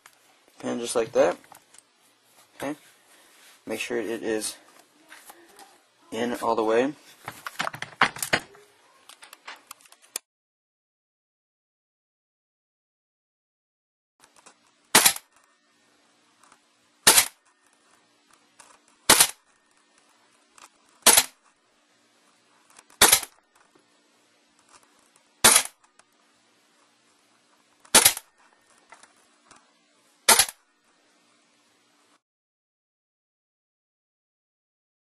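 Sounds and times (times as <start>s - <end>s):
airsoft rifle shots: 14.9s - 15.3s, 17.0s - 17.4s, 19.1s - 19.4s, 21.0s - 21.4s, 23.0s - 23.4s, 25.4s - 25.8s, 27.9s - 28.3s, 30.3s - 30.6s.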